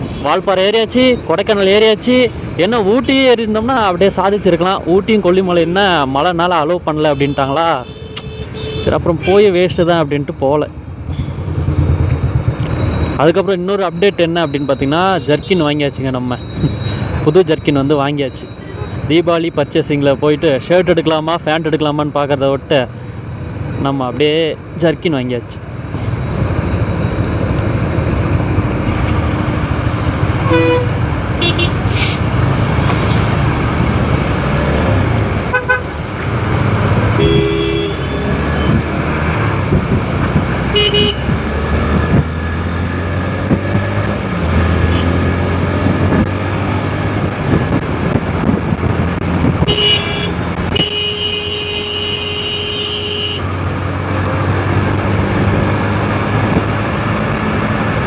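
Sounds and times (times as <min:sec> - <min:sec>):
motorcycle engine and road rumble: 0:00.0 - 0:58.0
vehicle horns honking: 0:07.0 - 0:09.4, 0:30.4 - 0:32.2, 0:35.5 - 0:36.0, 0:37.1 - 0:38.8, 0:40.6 - 0:41.4, 0:44.8 - 0:45.2, 0:49.6 - 0:53.5.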